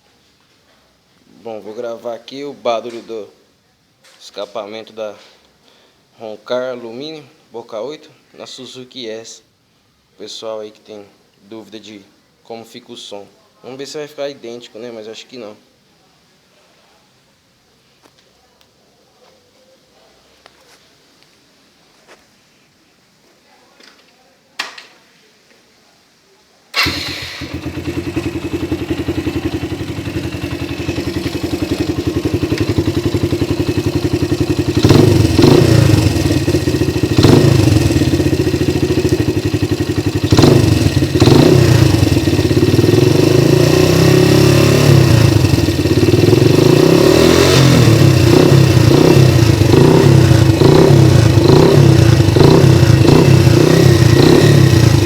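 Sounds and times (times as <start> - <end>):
motorcycle engine idling and revving: 26.8 - 55.0.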